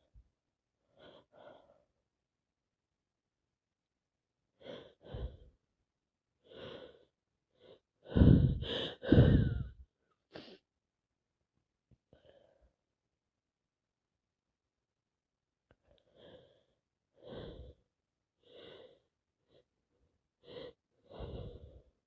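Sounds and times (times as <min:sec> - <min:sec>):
woman breathing in short breaths: 0:04.6 - 0:05.6, 0:06.4 - 0:10.6, 0:15.8 - 0:17.8, 0:20.4 - 0:22.0
woman sniffing: 0:10.3 - 0:10.6.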